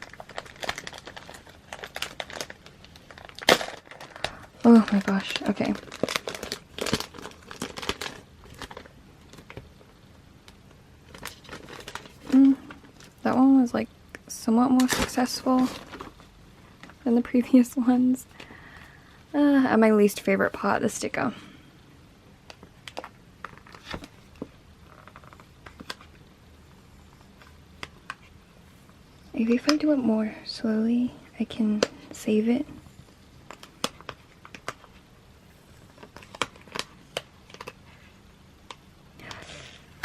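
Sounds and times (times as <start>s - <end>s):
sticker seal peeling crackle: 0.0s - 9.6s
plastic wrapping crinkling: 0.0s - 13.7s, 14.7s - 18.8s, 22.5s - 26.2s, 33.1s - 35.1s, 35.8s - 40.0s.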